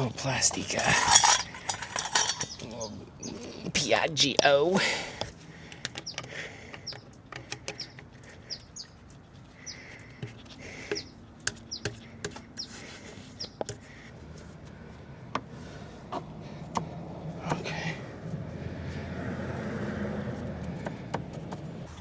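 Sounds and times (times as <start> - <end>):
small bird chirping: 1.6 - 3.7, 5.9 - 13.6
clicks and taps of parts: 5.2 - 8.2, 10.2 - 12.7, 13.4 - 13.9.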